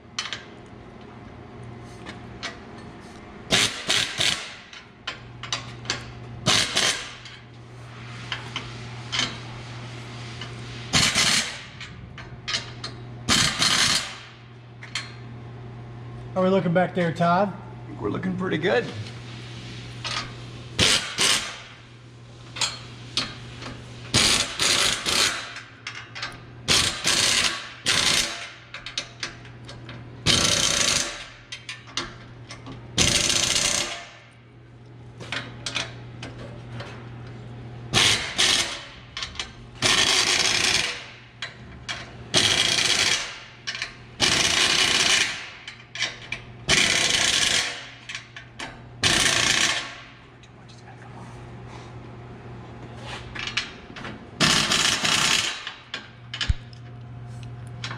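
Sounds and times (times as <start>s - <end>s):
impact wrench bursts: 3.5s - 4.9s, 6.4s - 7.4s, 10.9s - 11.8s, 13.3s - 14.4s, 20.8s - 21.8s, 24.1s - 26.0s, 26.7s - 28.6s, 30.2s - 31.7s, 33.0s - 34.3s, 37.9s - 41.2s, 41.9s - 45.8s, 46.7s - 48.2s, 49.0s - 50.1s, 54.4s - 56.0s.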